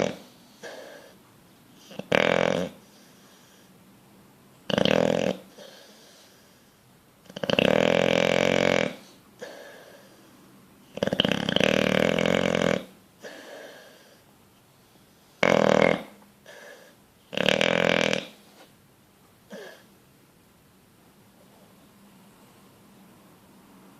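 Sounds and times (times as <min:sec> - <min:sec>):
dog snoring: 0:00.0 - 0:01.2, 0:01.8 - 0:03.7, 0:04.6 - 0:06.6, 0:07.2 - 0:10.2, 0:10.9 - 0:14.2, 0:15.1 - 0:18.5, 0:19.5 - 0:19.9
soft breaths: 0:02.8 - 0:04.0, 0:05.4 - 0:07.0, 0:09.0 - 0:10.7, 0:13.2 - 0:15.4, 0:16.2 - 0:17.1.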